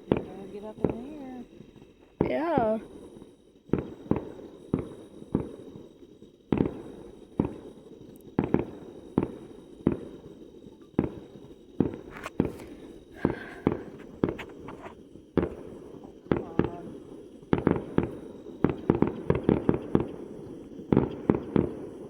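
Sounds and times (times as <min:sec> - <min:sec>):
fireworks bangs with rumble: 0:00.0 - 0:22.0.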